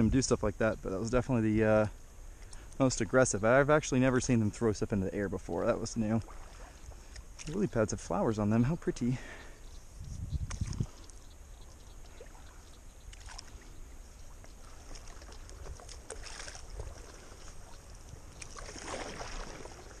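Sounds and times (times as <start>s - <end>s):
paddle splashing in water: 6.2s - 7.7s, 12.0s - 20.0s.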